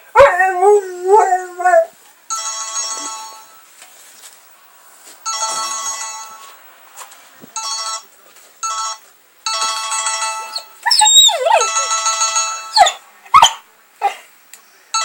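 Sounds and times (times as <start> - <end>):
cell phone ringtone chiming: 2.3 - 3.7, 5.3 - 6.5, 8.6 - 10.8
puppy crying: 10.5 - 12.0, 12.8 - 13.6.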